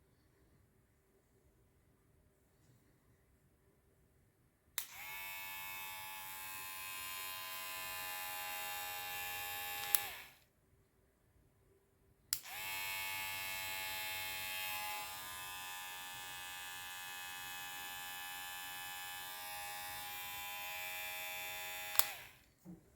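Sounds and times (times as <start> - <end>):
hair trimmer switch click: 4.8 - 5.2, 8.6 - 10.3, 12.3 - 12.8, 19.2 - 22.4
hair trimmer buzzing: 4.8 - 10.4, 12.4 - 22.4.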